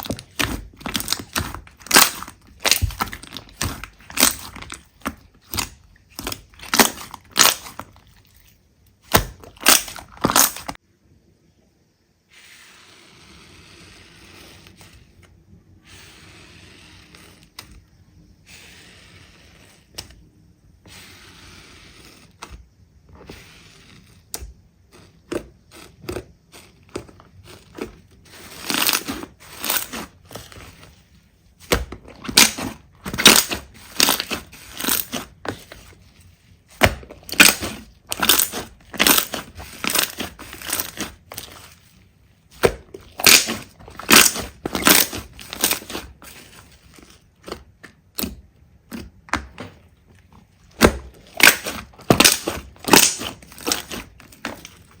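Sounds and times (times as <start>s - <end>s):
slime popping and squelching: 0.0s - 10.8s, 25.3s - 30.8s, 31.6s - 41.9s, 42.5s - 55.0s.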